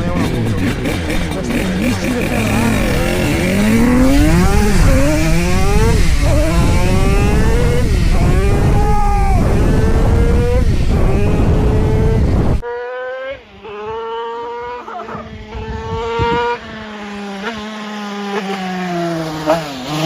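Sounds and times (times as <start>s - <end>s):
motorcycle engine revving: 0.0s - 20.0s
wind noise on microphone: 2.4s - 12.7s, 13.5s - 17.0s.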